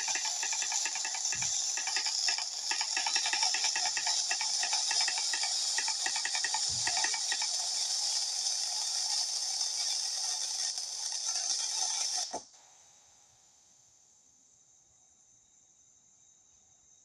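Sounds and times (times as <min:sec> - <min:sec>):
firework hissing and crackling: 0:00.0 - 0:12.5.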